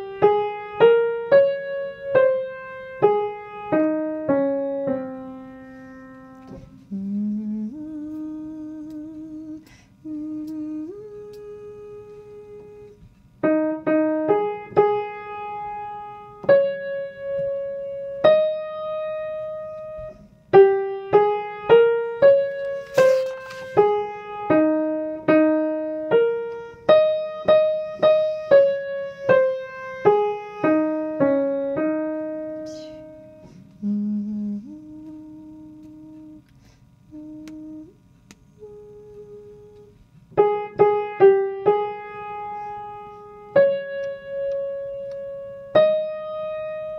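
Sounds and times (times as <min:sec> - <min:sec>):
piano melody: 0:00.0 - 0:06.6, 0:13.4 - 0:33.5, 0:40.4 - 0:46.9.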